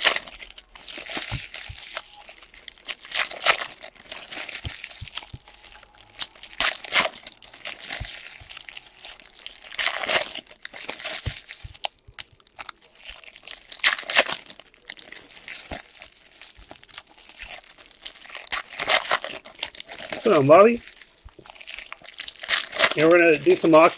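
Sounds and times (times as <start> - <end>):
cards being handled: 0.0 - 12.7
wrappers crinkling and tearing: 0.0 - 23.9.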